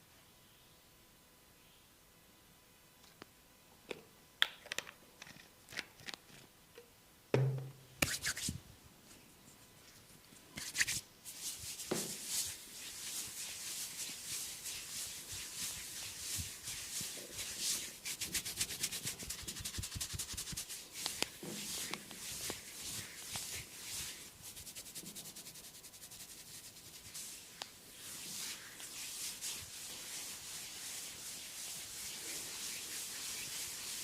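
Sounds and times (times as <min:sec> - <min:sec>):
taps and knocks: 0:07.4 - 0:07.8
hands stroking skin: 0:08.0 - 0:08.6, 0:10.6 - 0:34.0.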